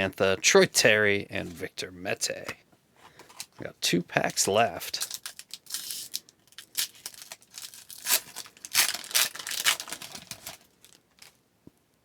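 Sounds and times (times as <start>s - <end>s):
wrapper tearing and crinkling: 4.3s - 11.4s.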